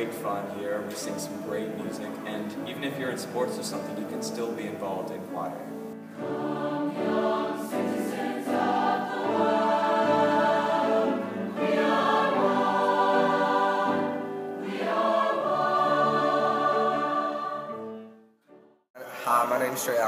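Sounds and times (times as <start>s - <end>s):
choir singing held notes: 5.7s - 18.2s.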